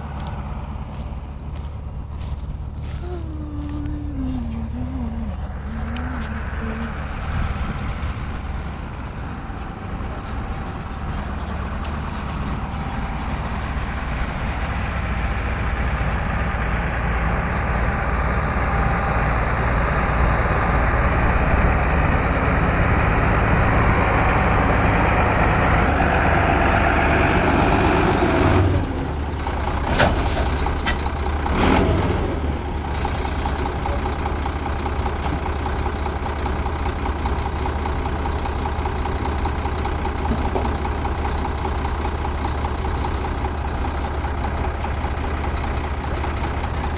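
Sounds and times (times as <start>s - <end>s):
combine harvester running: 0.0s - 46.9s.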